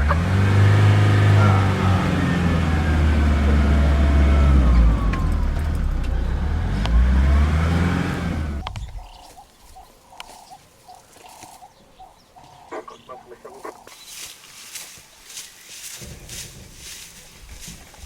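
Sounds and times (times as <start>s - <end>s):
vehicle engine revving: 0.0s - 8.9s.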